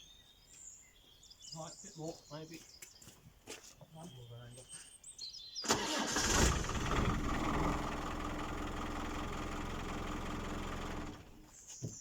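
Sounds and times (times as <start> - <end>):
vehicle engine starting and idling: 5.7 - 11.5.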